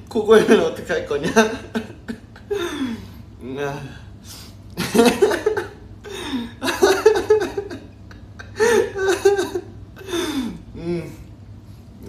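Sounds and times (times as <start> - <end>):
man laughing hard: 1.2 - 3.0, 4.8 - 10.2.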